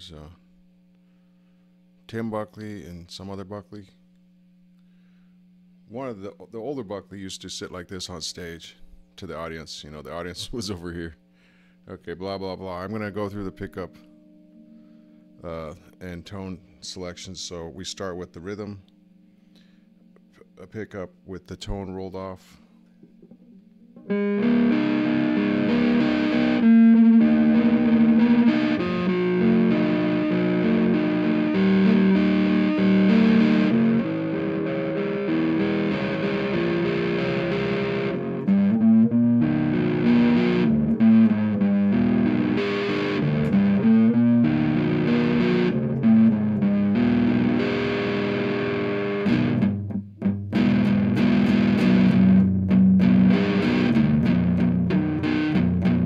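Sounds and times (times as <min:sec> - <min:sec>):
distorted electric guitar: 0:21.6 - 0:56.0.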